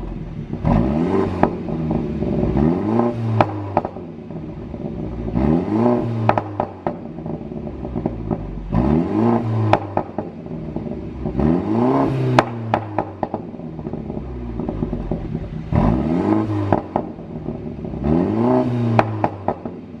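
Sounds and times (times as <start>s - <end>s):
car engine revving: 0.0s - 20.0s
exhaust pops and crackles: 1.4s - 2.6s, 3.3s - 5.4s, 6.2s - 8.8s, 9.6s - 11.4s, 12.3s - 16.0s, 16.6s - 18.0s, 18.8s - 20.0s.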